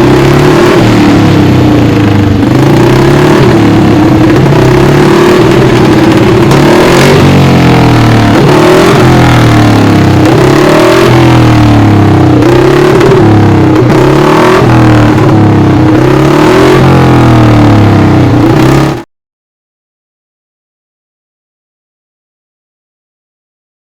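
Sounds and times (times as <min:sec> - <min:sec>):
racing engine revving: 0:00.0 - 0:19.0.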